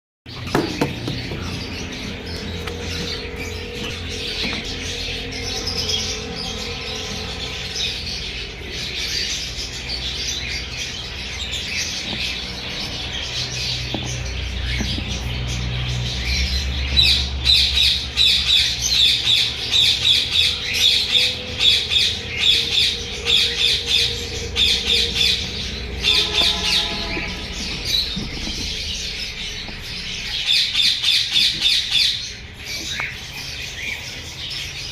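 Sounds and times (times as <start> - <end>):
cockatiels squawking: 0.3 - 34.3.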